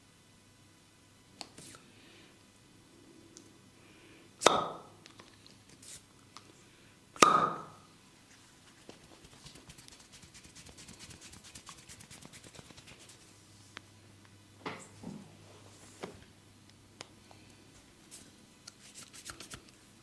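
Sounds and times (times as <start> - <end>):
hands slapping skin: 18.7 - 19.7.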